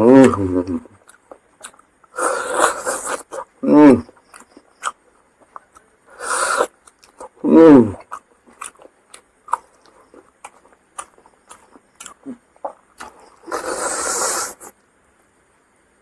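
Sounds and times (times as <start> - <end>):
wet chewing clicks and smacks: 0.2 - 2.2, 2.8 - 7.4, 8.0 - 13.5.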